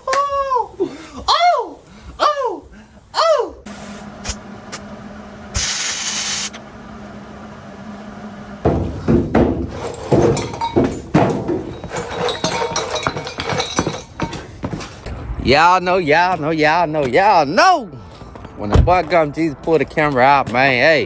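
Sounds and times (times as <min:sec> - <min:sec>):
steady low hum: 0:01.8 - 0:21.0
short burst of hiss: 0:03.7 - 0:04.4, 0:05.6 - 0:06.6
hard objects clinking and clattering: 0:08.7 - 0:15.1.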